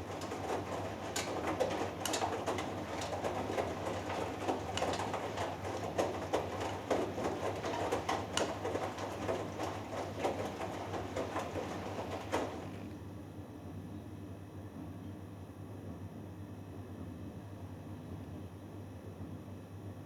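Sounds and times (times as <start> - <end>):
washing machine motor hum: 0.0 - 13.0
water sloshing in washing machine: 0.0 - 13.0.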